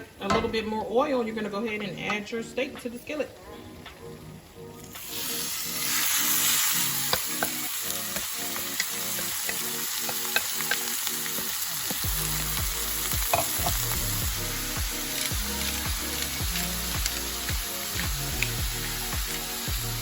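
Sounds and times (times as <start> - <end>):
steak sizzling in oil: 4.1 - 20.0
oil popping: 7.0 - 20.0.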